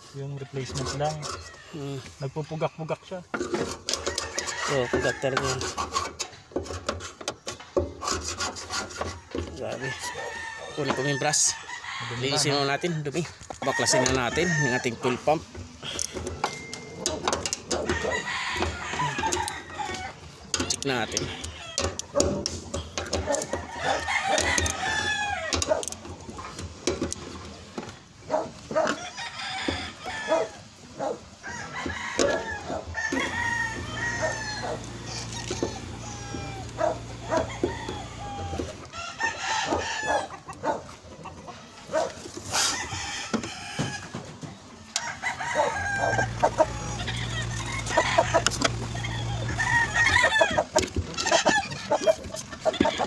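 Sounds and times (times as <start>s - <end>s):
chickens clucking: 0.0s - 53.0s
rooster crowing: 3.9s - 5.6s, 9.7s - 12.8s, 13.6s - 15.2s, 17.7s - 22.0s, 23.2s - 25.8s, 28.8s - 30.7s, 31.4s - 40.8s, 44.9s - 53.0s
sharp clicks and knocks: 15.5s - 19.6s, 20.5s - 28.0s, 46.0s - 53.0s.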